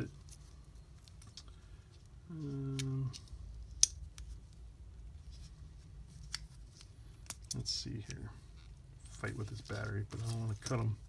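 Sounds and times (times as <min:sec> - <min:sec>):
person humming: 0:02.3 - 0:03.2
battery packs and packaging handled: 0:09.1 - 0:11.0.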